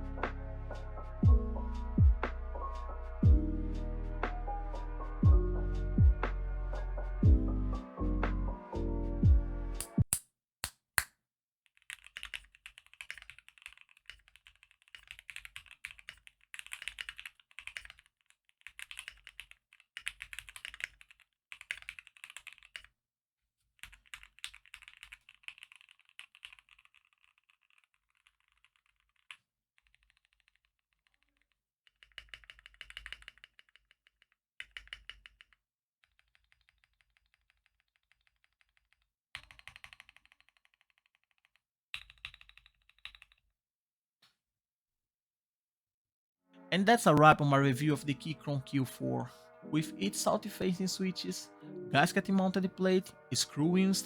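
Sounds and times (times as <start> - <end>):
mechanical keyboard typing: 11.8 - 22.9, 23.8 - 29.3, 32.1 - 33.5.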